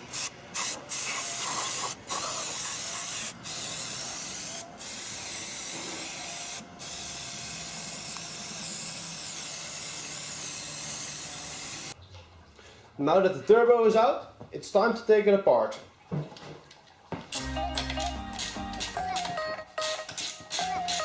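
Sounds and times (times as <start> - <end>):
cleaning spray hissing: 0.0 - 12.0.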